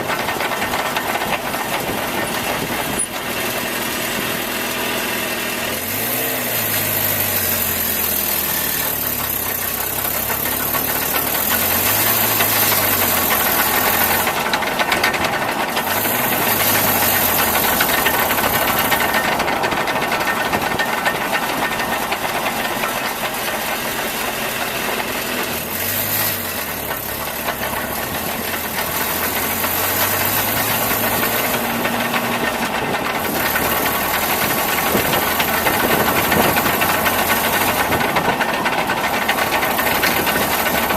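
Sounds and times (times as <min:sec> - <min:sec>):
truck engine running: 0:00.0 - 0:40.9.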